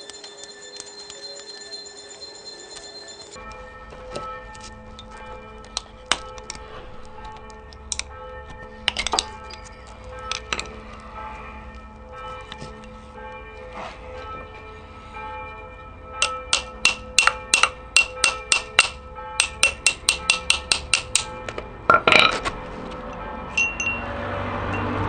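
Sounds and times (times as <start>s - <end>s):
ringing metal taps: 7.3s - 10.7s, 16.2s - 24.1s
metal parts scraping rattle: 21.9s - 23.0s.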